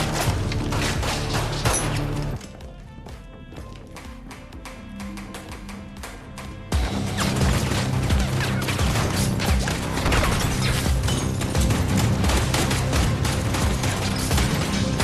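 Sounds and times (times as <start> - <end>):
rapid gunfire: 6.8 - 15.0.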